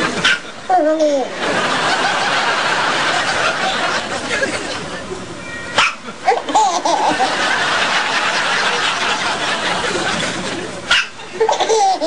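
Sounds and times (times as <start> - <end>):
people laughing and snickering: 0.0 - 0.7, 1.3 - 5.4, 6.0 - 12.0
baby hiccup: 5.8 - 6.0.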